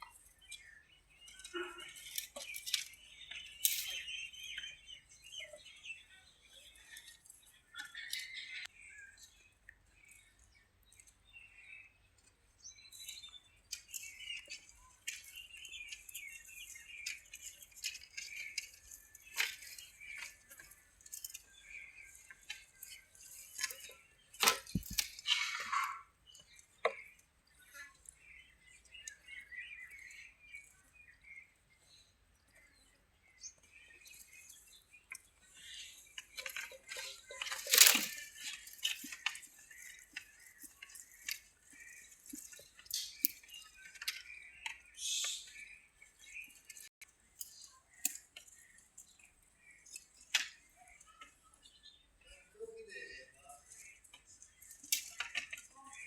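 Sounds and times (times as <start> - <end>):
faint bird chirps: 0.0 - 56.0
goats chewing grass: 12.7 - 25.9, 33.7 - 44.4.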